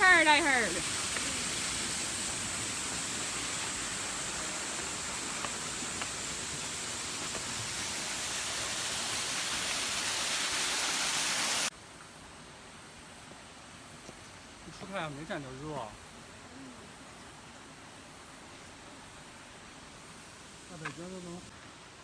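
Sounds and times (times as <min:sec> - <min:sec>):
flowing water hiss: 0:00.0 - 0:22.0.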